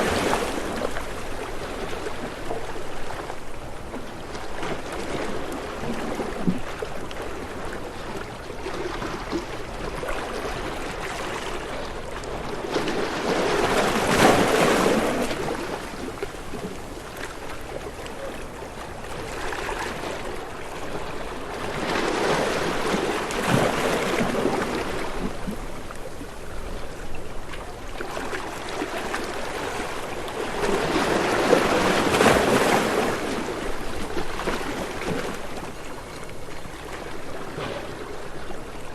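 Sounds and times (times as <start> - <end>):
ocean waves washing in: 0.0 - 2.5.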